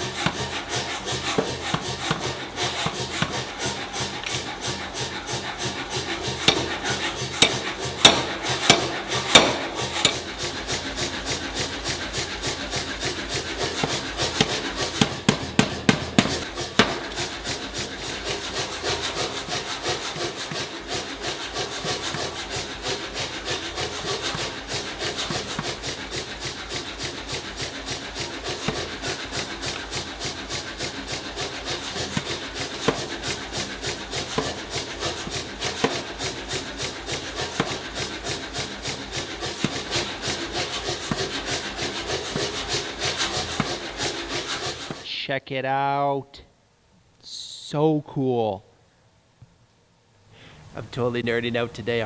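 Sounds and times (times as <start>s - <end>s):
hand tool scraping: 0.0s - 45.1s.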